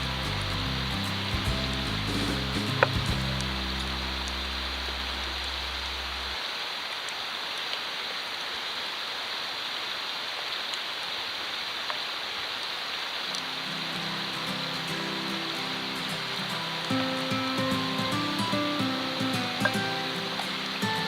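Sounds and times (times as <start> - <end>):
wood fire hissing and crackling: 0.0 - 21.0.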